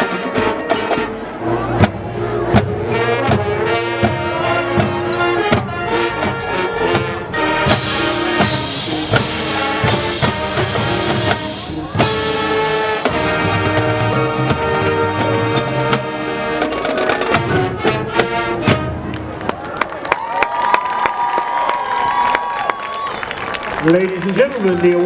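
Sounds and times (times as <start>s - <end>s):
marching band playing: 0.0s - 19.6s.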